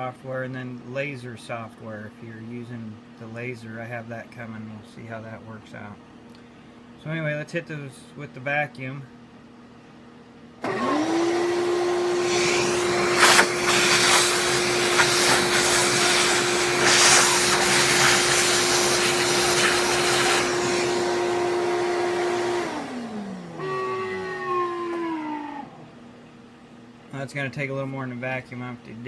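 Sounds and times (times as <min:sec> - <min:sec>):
vacuum cleaner running: 0:10.6 - 0:26.2.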